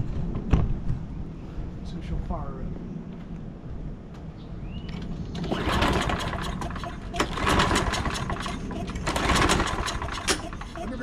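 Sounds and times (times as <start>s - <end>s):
engine cranking with rapid clattering: 5.3s - 11.0s
pull-starter yanked: 5.4s - 11.0s.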